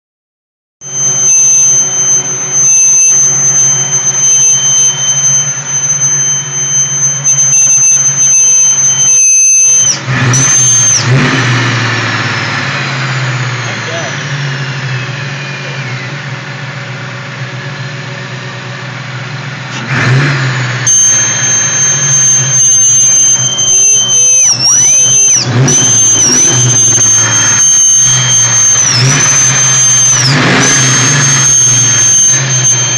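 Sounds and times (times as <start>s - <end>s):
car engine humming: 0.8s - 32.9s
high-pitched squeal: 0.8s - 32.9s.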